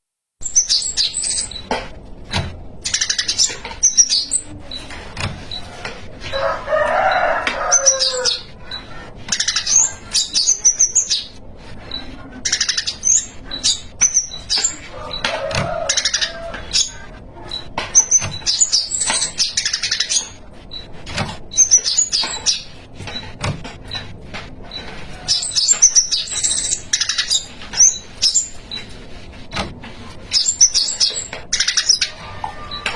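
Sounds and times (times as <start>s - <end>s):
bird high chirping song: 0.4s - 1.7s, 2.8s - 4.9s, 7.1s - 20.8s, 21.5s - 23.3s, 24.7s - 29.0s, 30.3s - 32.9s.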